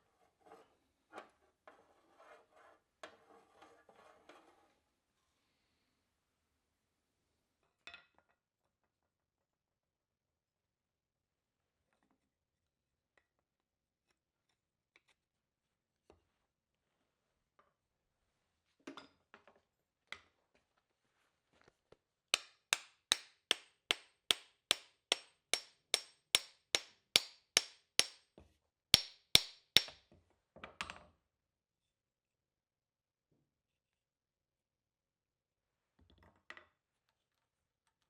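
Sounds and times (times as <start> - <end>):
hammer striking steel on anvil: 22.4 - 28.2, 29.0 - 30.0.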